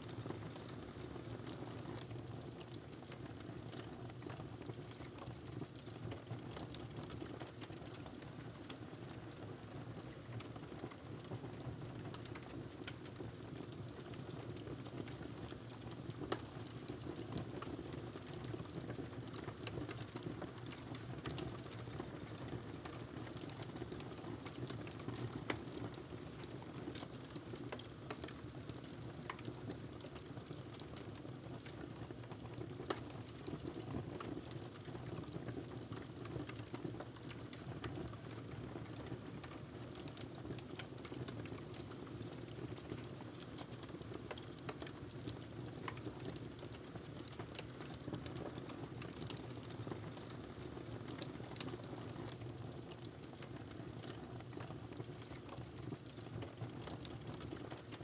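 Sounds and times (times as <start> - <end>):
wood fire crackling: 18.3 - 57.9.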